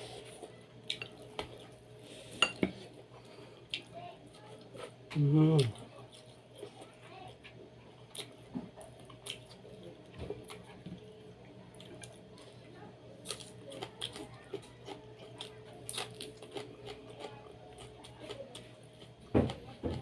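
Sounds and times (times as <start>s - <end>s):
low steady hum: 0.0s - 20.0s.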